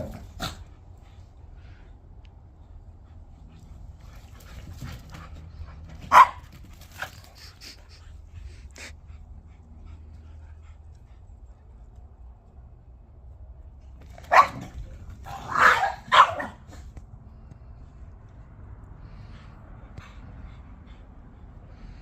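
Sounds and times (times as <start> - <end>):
dogs panting: 0.0 - 12.8, 16.6 - 22.0
dog barking: 6.1 - 6.4, 14.3 - 14.7, 15.3 - 16.6
dog yelping: 15.3 - 16.6.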